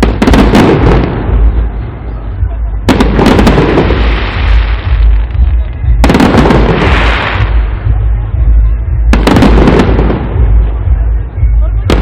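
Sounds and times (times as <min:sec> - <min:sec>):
low rumble: 0:00.0 - 0:12.0
firework bang: 0:02.9 - 0:07.9
firework hiss: 0:03.2 - 0:07.8.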